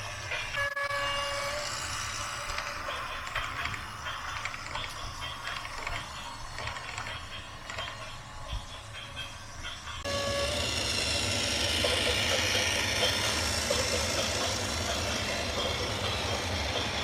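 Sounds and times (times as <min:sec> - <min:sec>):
mechanical rattling and clicking: 0:01.7 - 0:08.1.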